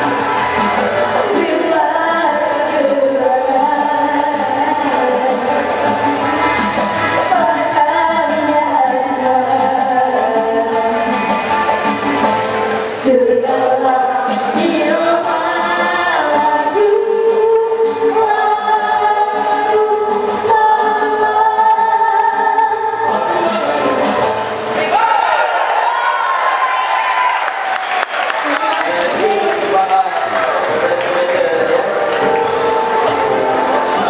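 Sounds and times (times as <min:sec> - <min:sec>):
music with voices singing: 0:00.0 - 0:25.0, 0:28.6 - 0:34.0.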